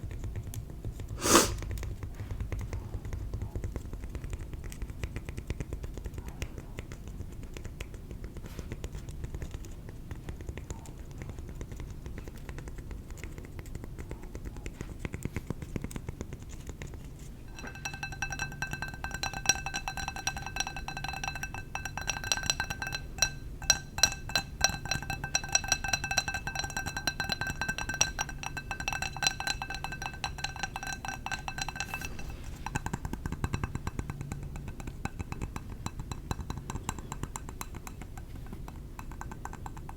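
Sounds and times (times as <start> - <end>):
light tapping on cork: 0.0 - 39.9
glass ringing tone: 17.5 - 32.8
tapping on glass jar: 17.5 - 39.9.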